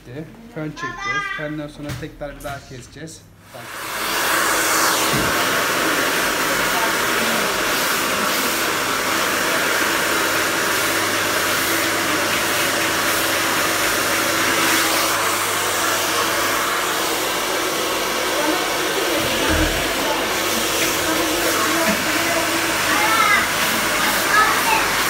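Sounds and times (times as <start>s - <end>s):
hair dryer running: 3.4s - 25.0s.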